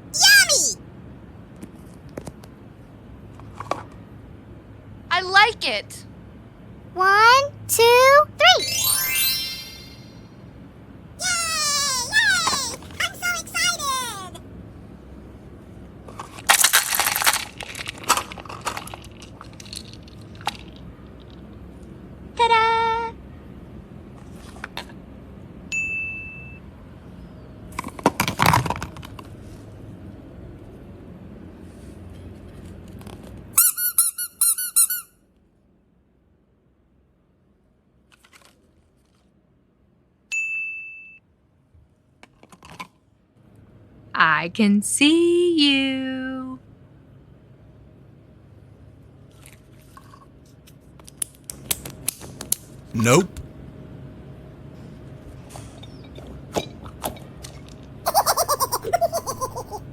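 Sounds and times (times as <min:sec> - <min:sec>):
bell-like ding: 0:25.8 - 0:26.6, 0:40.3 - 0:41.2.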